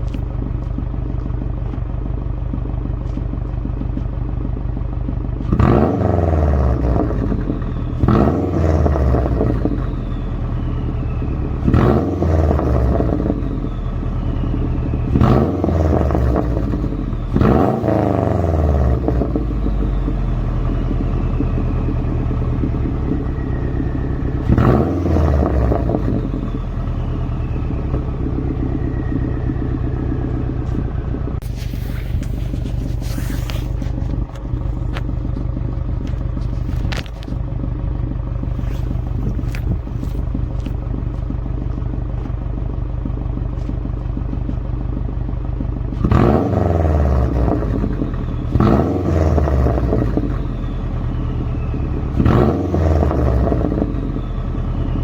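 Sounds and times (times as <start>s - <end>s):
car engine idling and revving: 0.0s - 55.0s.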